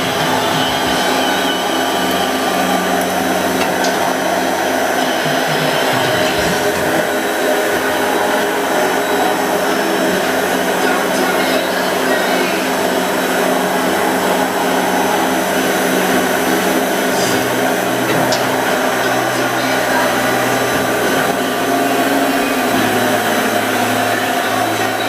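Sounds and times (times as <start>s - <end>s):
machine hum: 0.0s - 25.0s.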